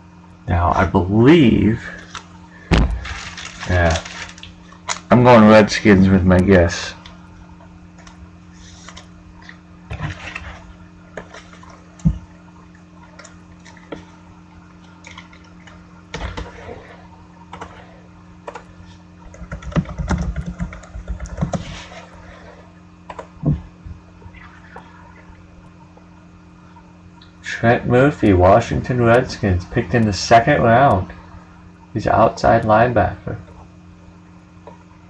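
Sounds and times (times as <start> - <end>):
faint electrical hum: 0.0 - 35.0
cards and packaging rustling: 2.0 - 5.1.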